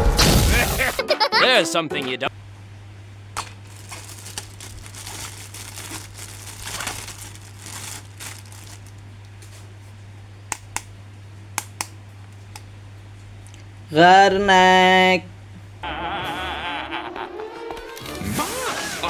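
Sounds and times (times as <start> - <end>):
steady low hum: 2.3 - 16.1
plastic packaging crinkling: 3.2 - 10.0.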